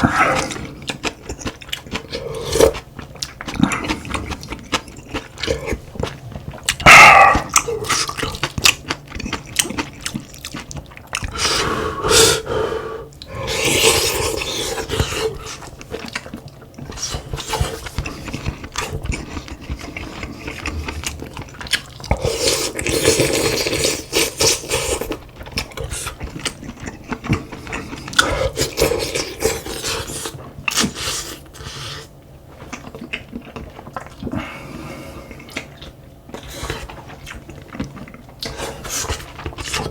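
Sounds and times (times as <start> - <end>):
person chewing: 0.0 - 39.9
slurping broth: 11.3 - 16.0, 17.0 - 25.2.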